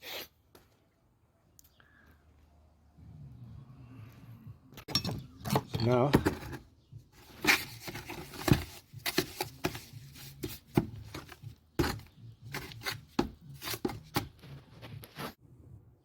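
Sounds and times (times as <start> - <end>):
trowel scraping mortar: 7.3 - 15.4.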